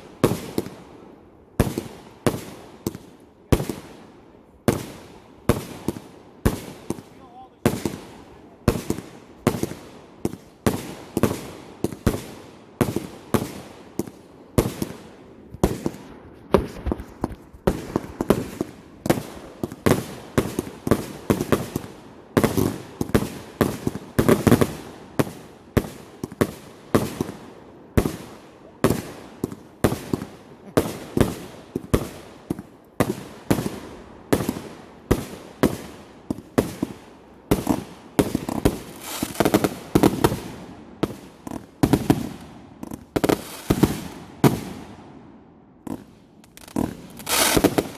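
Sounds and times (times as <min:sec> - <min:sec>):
fireworks bangs: 0:00.0 - 0:47.9.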